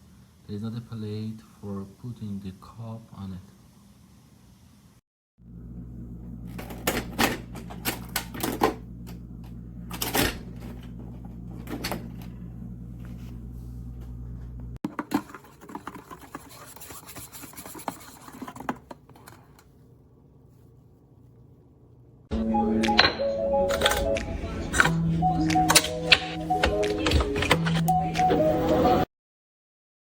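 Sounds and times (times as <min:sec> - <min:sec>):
coffee machine humming: 0:05.4 - 0:19.6.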